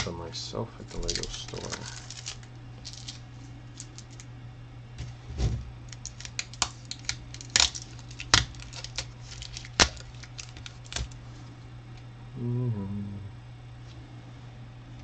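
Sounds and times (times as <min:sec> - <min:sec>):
tape tearing: 0:00.9 - 0:04.2, 0:05.9 - 0:11.2.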